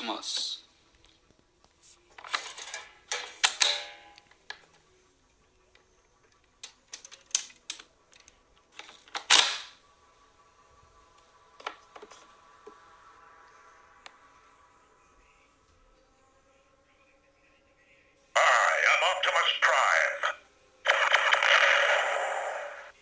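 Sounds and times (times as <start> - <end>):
plastic toy clicks and clatter: 2.2 - 3.9, 6.6 - 9.6.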